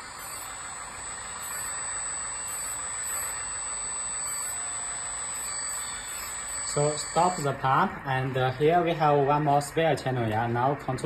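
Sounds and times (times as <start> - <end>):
hydraulic pump whirring: 0.0 - 10.7.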